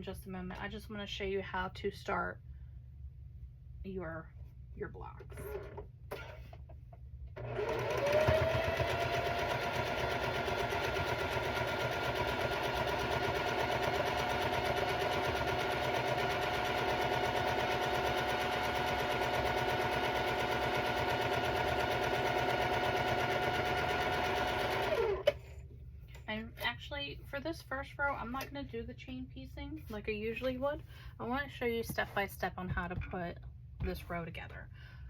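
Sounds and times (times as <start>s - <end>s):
sewing machine running: 7.4s - 25.4s.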